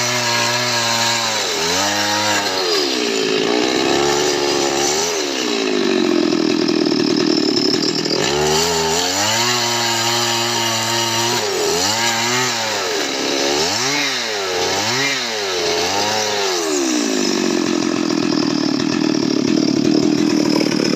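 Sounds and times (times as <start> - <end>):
chainsaw engine revving: 0.0 - 20.9.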